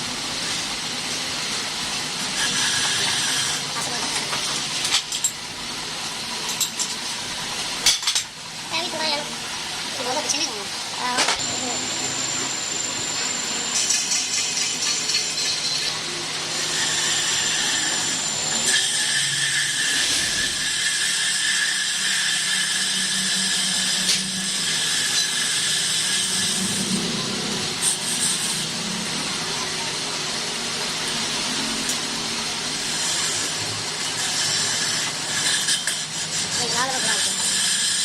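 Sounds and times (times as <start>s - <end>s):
thin steady whine: 0.0s - 20.7s
power tool hissing on metal: 0.0s - 38.0s.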